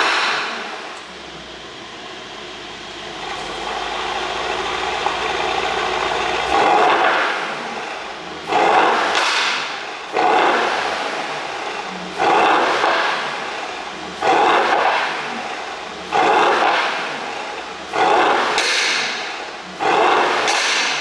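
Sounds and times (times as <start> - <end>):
car engine exhaust revving: 0.0 - 9.5.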